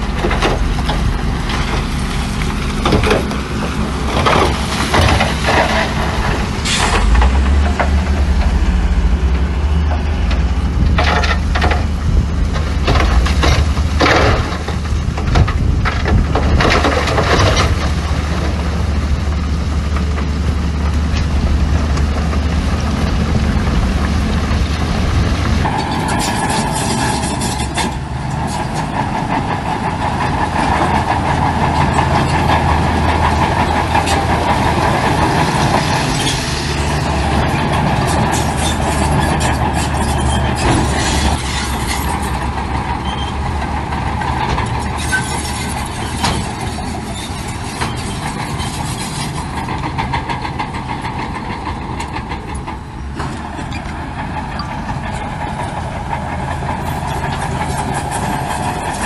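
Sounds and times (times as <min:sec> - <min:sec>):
diesel earthmoving machinery running: 0:00.0 - 0:59.0.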